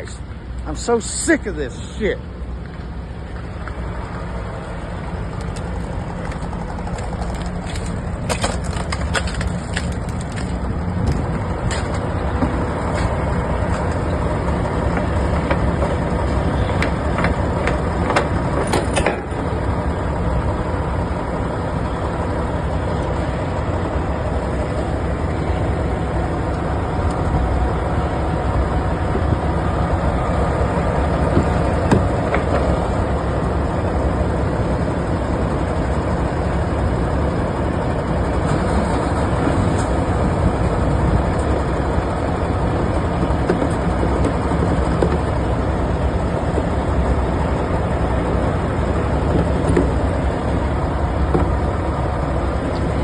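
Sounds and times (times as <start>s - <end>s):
diesel truck engine running: 0.0s - 53.0s
footsteps crunching on ice: 6.2s - 12.1s.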